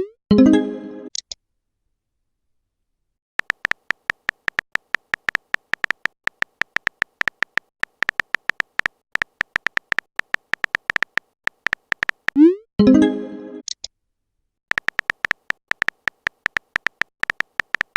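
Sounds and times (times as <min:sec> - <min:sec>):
short electronic typing beeps: 0:03.4 - 0:12.6, 0:14.7 - 0:17.9.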